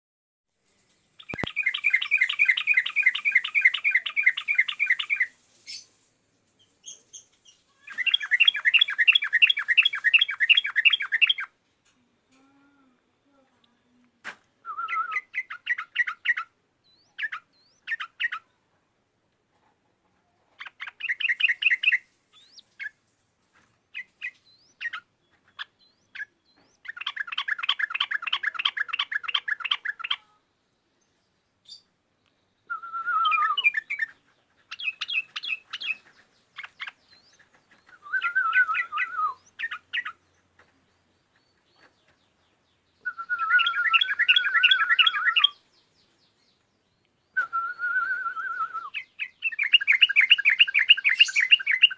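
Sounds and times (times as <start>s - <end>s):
bird chattering song: 1.2s - 5.9s, 6.6s - 11.5s, 14.8s - 18.5s, 20.6s - 23.0s, 23.9s - 30.3s, 32.6s - 47.8s, 48.5s - 51.9s.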